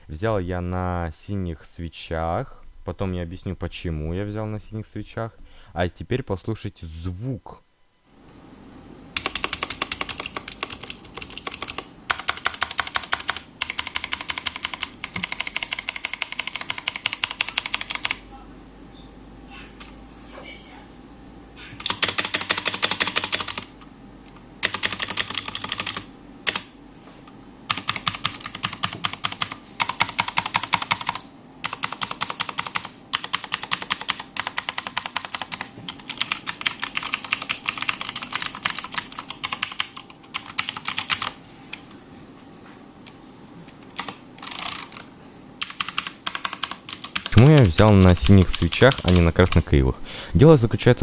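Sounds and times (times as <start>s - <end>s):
mechanical keyboard typing: 9.2s - 18.2s, 21.8s - 23.7s, 24.6s - 26.7s, 27.7s - 41.4s, 43.9s - 49.7s.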